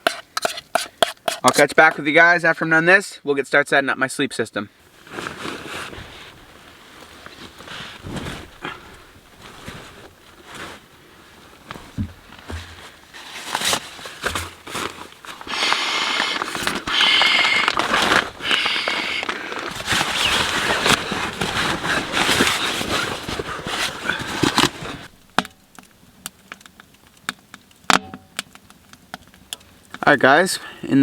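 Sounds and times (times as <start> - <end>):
wood stove fire crackling: 4.8 - 30.8
fabric and gear rustling: 4.9 - 15.5, 16.1 - 25.1.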